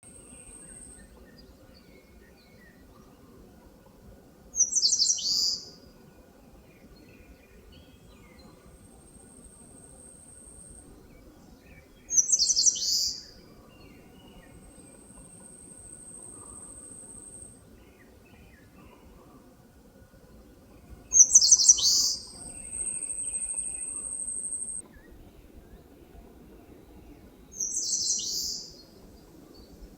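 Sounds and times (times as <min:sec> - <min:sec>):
faint distant bird chirps: 0:00.0 - 0:29.9
thin high-pitched hiss: 0:21.1 - 0:24.8.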